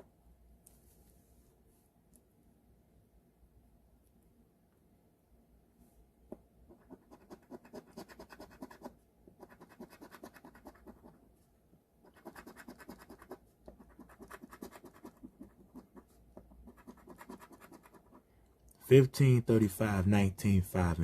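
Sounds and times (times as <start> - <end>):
lottery ticket being scratched: 6.8 - 11.2, 12.1 - 18.2.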